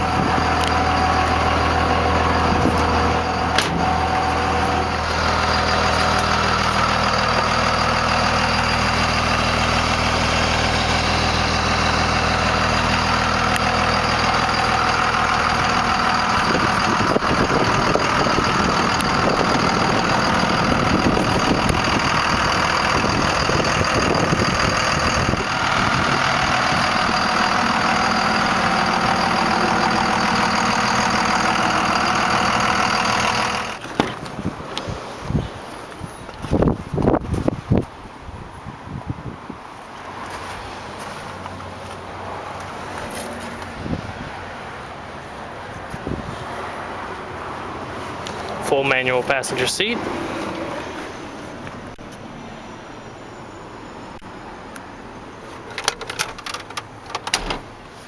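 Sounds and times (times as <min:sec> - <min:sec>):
diesel engine idling: 0:00.0 - 0:38.1, 0:46.9 - 0:58.0.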